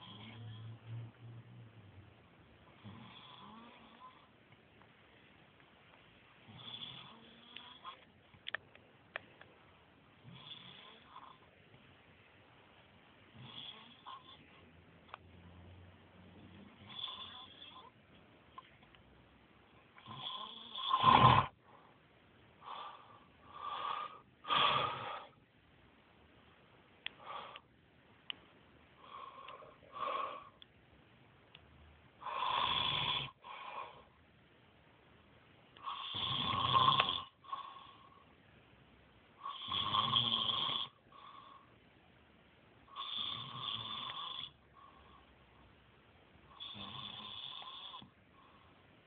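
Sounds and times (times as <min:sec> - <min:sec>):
snoring: 0:00.0 - 0:01.0, 0:02.8 - 0:04.3, 0:06.5 - 0:08.0, 0:10.2 - 0:11.4, 0:13.3 - 0:14.4, 0:16.5 - 0:17.9, 0:20.0 - 0:21.6, 0:32.2 - 0:34.0, 0:35.8 - 0:38.1, 0:39.4 - 0:41.6, 0:42.9 - 0:44.6, 0:46.5 - 0:48.1.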